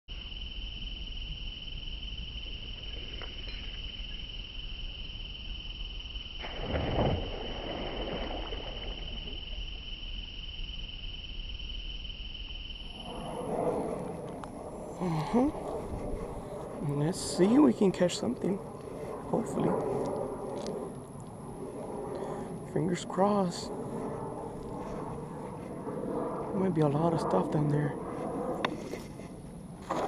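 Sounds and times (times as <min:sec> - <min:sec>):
high insect drone: 0:00.1 - 0:30.0
low steady rumble: 0:12.8 - 0:30.0.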